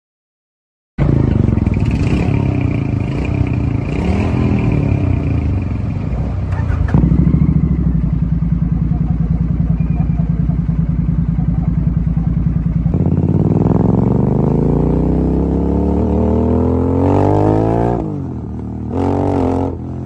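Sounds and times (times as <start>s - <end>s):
engine revving: 1.0s - 8.0s, 12.8s - 20.0s
motorcycle engine running: 1.0s - 20.0s.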